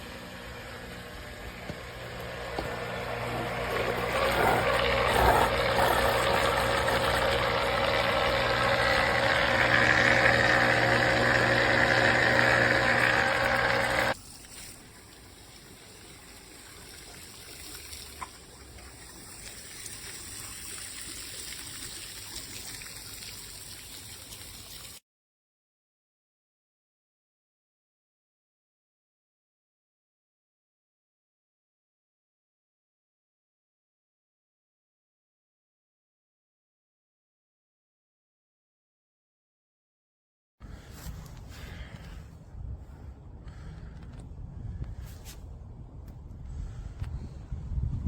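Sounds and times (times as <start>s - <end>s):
pump motor hum: 0.0s - 25.0s
water trickling: 14.2s - 25.0s.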